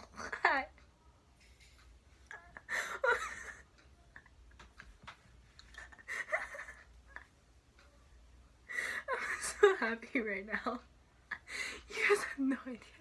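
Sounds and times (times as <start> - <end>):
person giggling: 2.3 - 4.6, 5.6 - 7.4.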